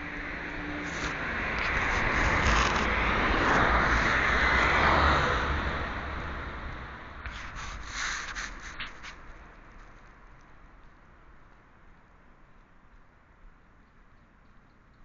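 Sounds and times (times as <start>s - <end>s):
vehicle tyre and road noise: 0.0s - 15.0s.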